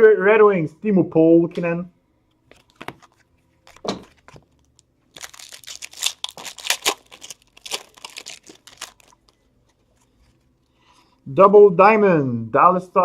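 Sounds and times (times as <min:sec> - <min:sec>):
card pack wrapper tearing and crinkling: 0:04.6 - 0:09.4.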